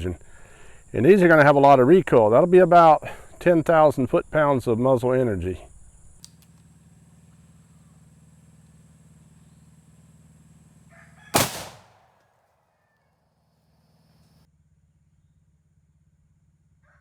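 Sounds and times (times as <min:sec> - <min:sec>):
heavy rifle shot: 0:11.4 - 0:12.3.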